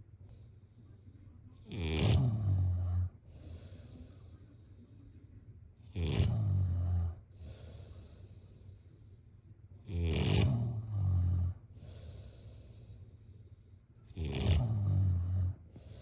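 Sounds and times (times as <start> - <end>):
person snoring: 1.7 - 3.1, 9.9 - 12.0, 14.1 - 16.0
breathy hiss: 2.0 - 5.4, 7.0 - 9.6, 10.2 - 16.0.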